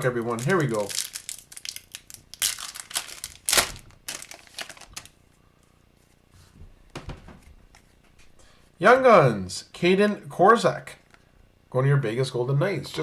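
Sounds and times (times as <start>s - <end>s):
card pack wrapper tearing: 0.0s - 5.1s.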